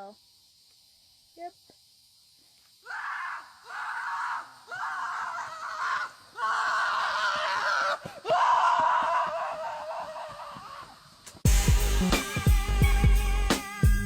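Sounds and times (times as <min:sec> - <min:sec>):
person screaming: 0:02.9 - 0:11.0.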